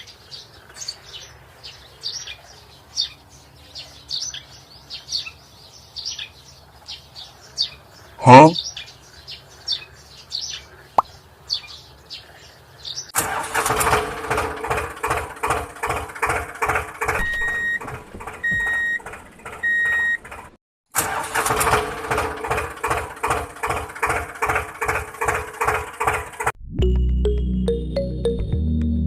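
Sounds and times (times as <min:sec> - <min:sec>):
tractor engine pulsing: 0:13.2 - 0:26.6
short beeps: 0:17.2 - 0:17.8, 0:18.4 - 0:19.0, 0:19.6 - 0:20.2.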